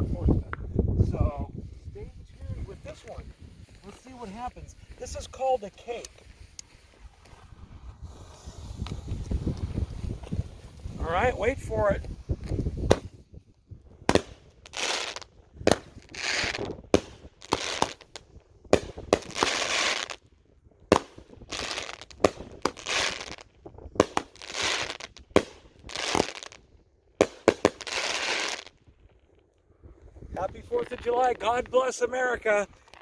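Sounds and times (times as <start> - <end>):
firework shots popping and bursting: 8.0 - 11.0, 12.0 - 13.3, 14.0 - 20.2, 20.8 - 26.6, 27.2 - 28.8.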